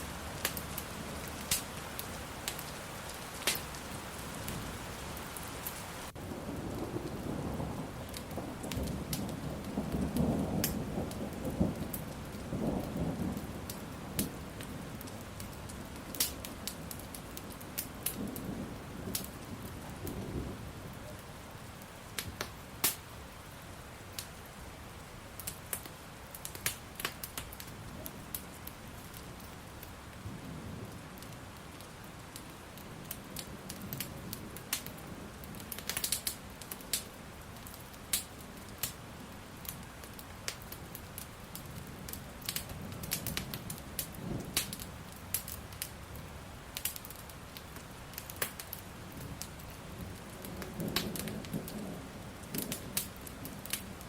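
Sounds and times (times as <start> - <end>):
wood fire crackling and popping: 0.0 - 7.3, 8.0 - 20.2, 22.0 - 23.1, 24.2 - 24.4, 25.3 - 30.2, 30.8 - 54.0
steady rain: 0.0 - 54.0
thunder rumbling: 6.1 - 16.0, 17.9 - 21.2, 42.7 - 45.1, 49.1 - 54.0.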